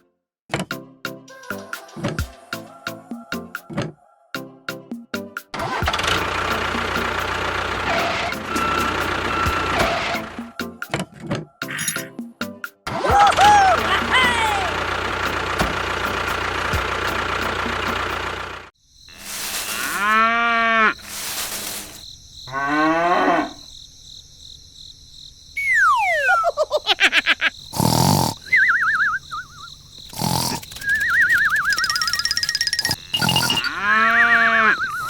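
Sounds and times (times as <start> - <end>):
busy music: 4.4 - 11.0, 11.6 - 18.3
engine-like sound: 5.6 - 10.4, 13.2 - 18.7
short hissing bursts: 21.0 - 22.1, 30.1 - 31.4
long falling whistle: 25.6 - 26.5
swooping tones: 25.6 - 26.6.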